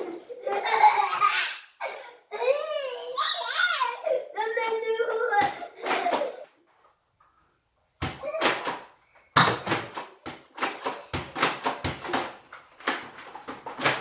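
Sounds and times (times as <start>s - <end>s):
darts bouncing off surfaces: 8.0s - 14.0s.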